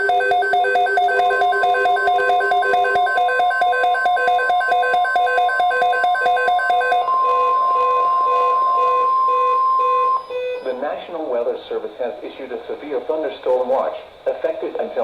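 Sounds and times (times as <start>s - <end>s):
electronic alert beeping: 0.0s - 10.8s
steady high warning tone: 0.0s - 11.3s.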